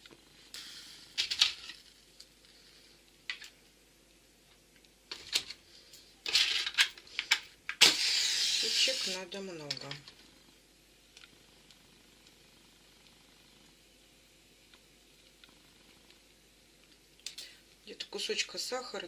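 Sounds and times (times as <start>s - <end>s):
match flaring with hiss: 0.2s - 3.1s, 7.7s - 9.4s
matches scratching on matchbox: 7.8s - 9.2s.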